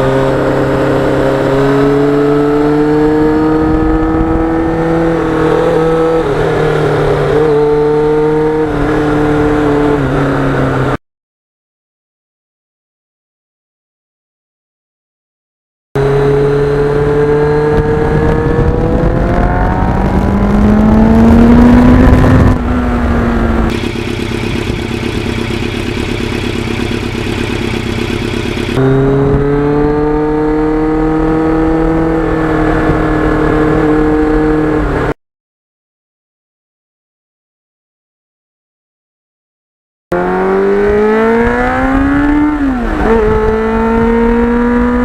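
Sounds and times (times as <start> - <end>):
motorcycle engine revving: 0.0 - 11.0, 16.0 - 35.2, 40.1 - 45.0.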